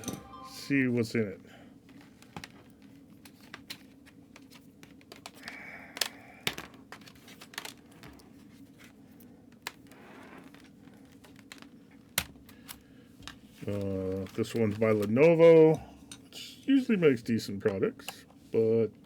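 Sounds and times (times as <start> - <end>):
plastic keyboard clicks and knocks: 3.2 - 8.2.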